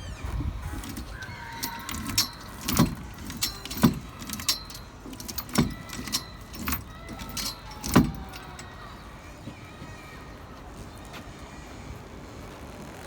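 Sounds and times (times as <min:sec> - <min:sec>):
sharp metallic knocks and clinks: 0:00.7 - 0:09.0.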